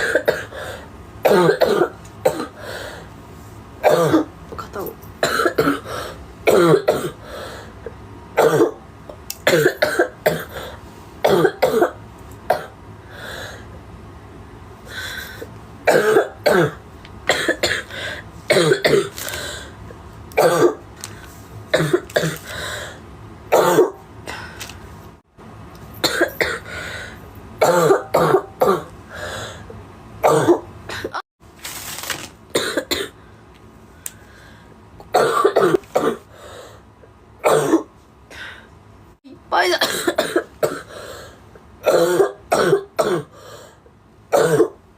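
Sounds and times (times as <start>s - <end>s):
girl coughing: 0.0s - 0.6s, 1.2s - 2.6s, 3.8s - 5.9s, 6.5s - 7.2s, 8.4s - 8.8s, 9.5s - 12.8s, 15.9s - 17.9s, 18.5s - 19.2s, 20.4s - 20.8s, 21.7s - 22.5s, 23.5s - 24.0s, 26.0s - 26.7s, 27.6s - 28.9s, 30.2s - 31.2s, 32.5s - 33.2s, 35.1s - 36.3s, 37.4s - 37.9s, 39.6s - 41.0s, 41.8s - 43.4s, 44.3s - 44.8s
girl clearing throat: 1.3s - 2.6s, 3.8s - 5.9s, 6.5s - 7.2s, 15.9s - 17.9s, 20.4s - 20.8s, 23.6s - 24.0s, 27.6s - 28.9s, 37.5s - 37.9s, 39.8s - 40.9s, 41.8s - 43.3s, 44.4s - 44.8s.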